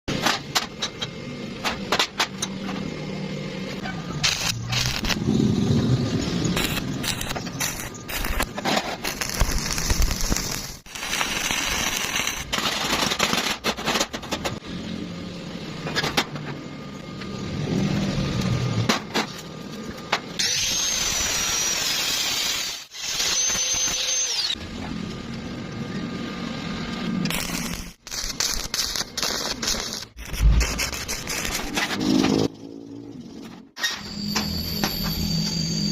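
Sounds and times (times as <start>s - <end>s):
crackling hiss: 4.2s - 12.6s.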